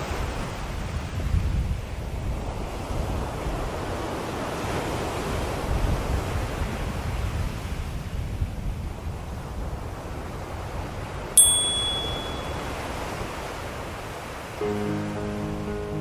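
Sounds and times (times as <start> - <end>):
ocean waves on shore: 0.0 - 8.4, 9.0 - 16.0.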